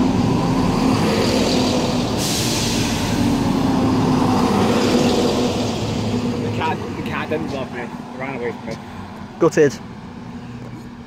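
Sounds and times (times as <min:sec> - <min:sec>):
train diesel engines idling: 0:00.0 - 0:11.0
air hissing: 0:01.6 - 0:03.5.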